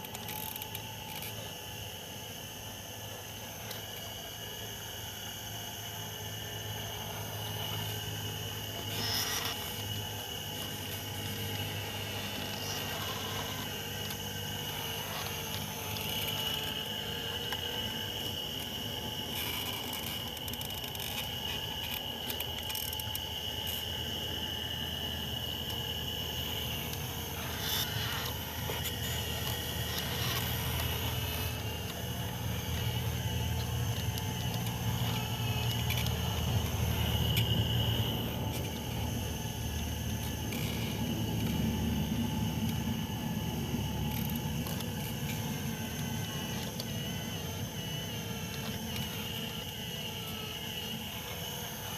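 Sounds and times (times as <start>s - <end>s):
faint high whine: 0.0s - 51.9s
small electric motors whirring: 0.0s - 51.9s.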